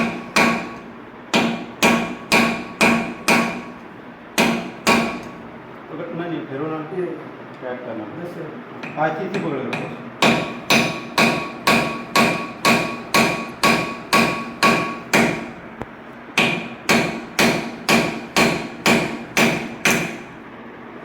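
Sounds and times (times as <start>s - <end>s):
hammer striking steel: 0.0s - 3.8s, 4.4s - 5.4s, 8.8s - 15.6s, 16.4s - 20.4s.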